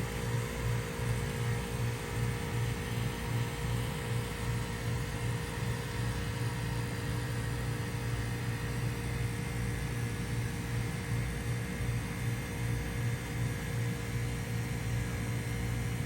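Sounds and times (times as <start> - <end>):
compressor humming: 0.0 - 11.0.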